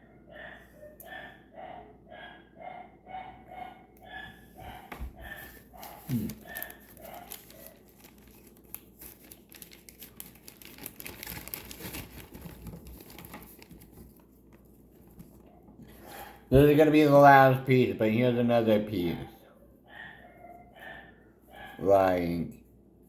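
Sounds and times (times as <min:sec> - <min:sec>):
packaging crinkling: 0:05.3 - 0:15.5.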